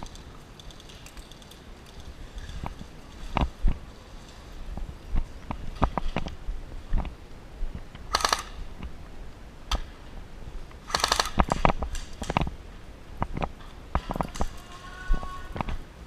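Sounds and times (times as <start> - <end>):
scattered clicks and knocks: 0.0 - 3.8, 10.9 - 12.5
airsoft gun firing bursts: 8.1 - 8.6, 10.8 - 11.6.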